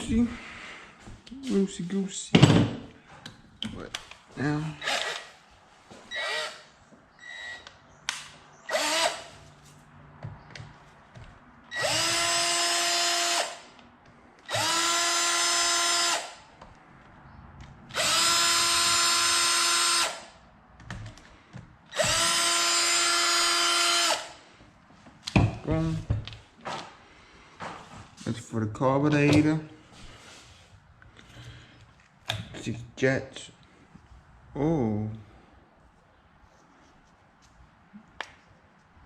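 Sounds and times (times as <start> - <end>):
power drill spinning: 4.8 - 5.4, 6.1 - 7.8, 8.7 - 9.5, 11.7 - 13.7, 14.4 - 16.4, 17.9 - 20.3, 21.9 - 24.4.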